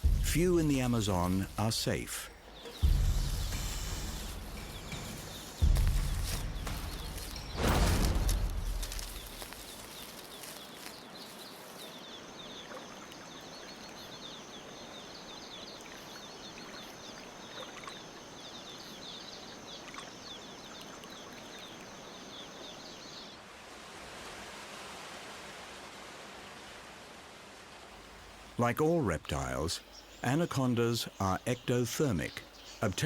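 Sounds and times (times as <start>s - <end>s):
quick chirps: 0.0s - 10.9s
steady hiss: 0.0s - 12.3s.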